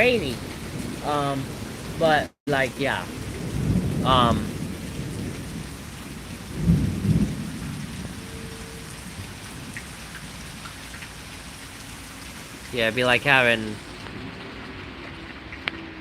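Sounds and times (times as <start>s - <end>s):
thunder rumble: 0.0s - 9.8s
steady rain: 0.0s - 16.0s.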